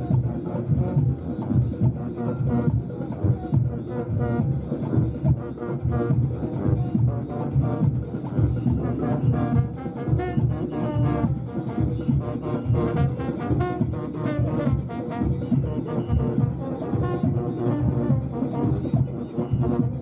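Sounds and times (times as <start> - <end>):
brass-led music with beat: 0.0 - 20.0.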